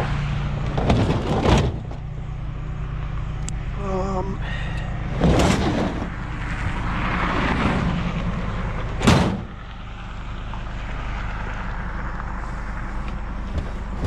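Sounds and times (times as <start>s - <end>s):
vehicle engine idling: 0.0s - 7.2s, 8.0s - 14.0s
loud bang: 9.0s - 9.6s.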